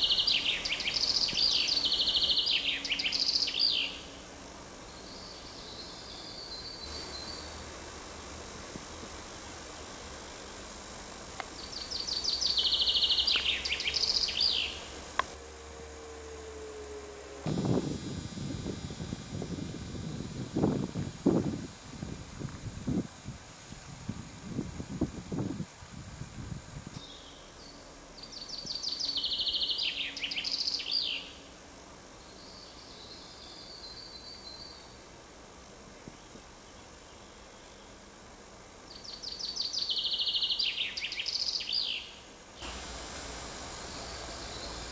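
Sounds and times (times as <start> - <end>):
songbird trilling: 0.0 - 4.1, 11.6 - 14.9, 27.0 - 31.4, 39.0 - 42.2
faint high bird twittering: 0.0 - 4.2, 4.9 - 7.6, 11.6 - 15.0, 27.0 - 31.5, 38.9 - 42.8, 43.8 - 44.9
songbird singing: 0.0 - 15.4, 26.9 - 35.1, 36.0 - 38.1, 38.9 - 44.9
steady background hiss: 0.0 - 44.9.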